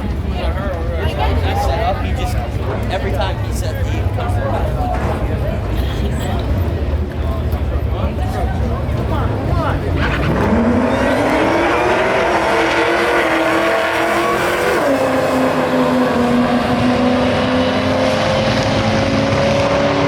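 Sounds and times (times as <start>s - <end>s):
drag race cars accelerating: 4.0s - 20.0s.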